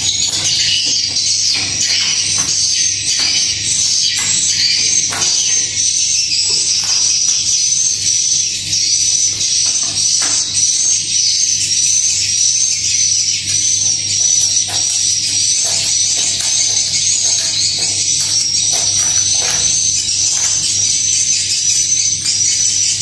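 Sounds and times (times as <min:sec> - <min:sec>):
swiftlets twittering: 0:00.0 - 0:12.3.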